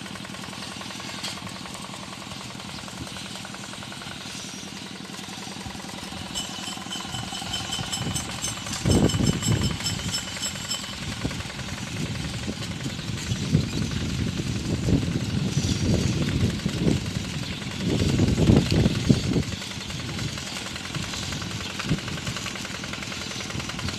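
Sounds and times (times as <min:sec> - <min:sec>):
tractor engine running: 0:00.0 - 0:23.9
high pulsing whistle-like tone: 0:05.3 - 0:11.6.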